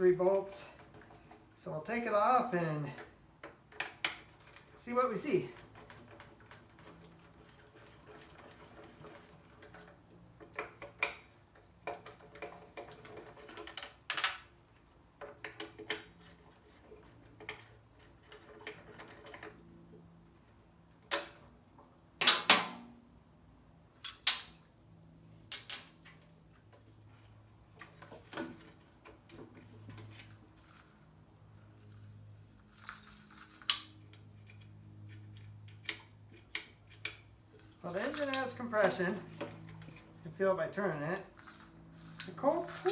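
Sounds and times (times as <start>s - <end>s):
hand tools clicking and knocking: 2.4s - 14.5s, 35.2s - 40.2s, 42.0s - 42.9s.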